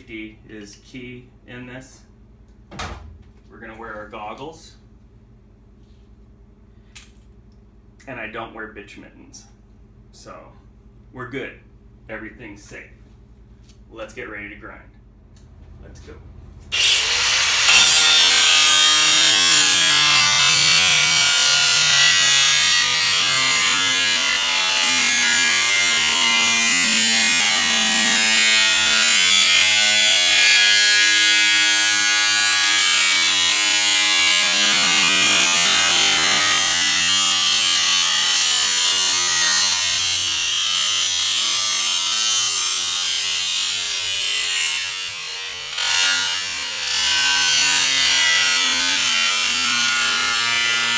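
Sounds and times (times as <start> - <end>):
angle grinder cutting sheet metal: 16.7 - 50.9.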